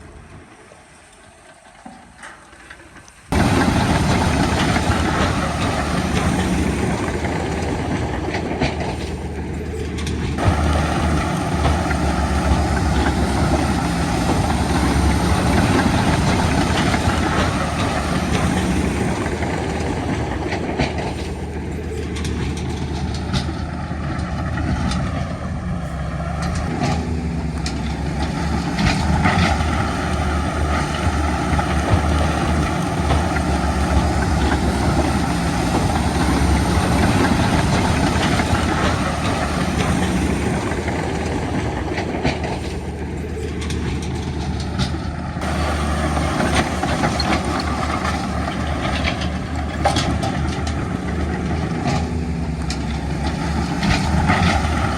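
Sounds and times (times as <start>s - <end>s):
heavy diesel machinery running: 0.0s - 54.9s.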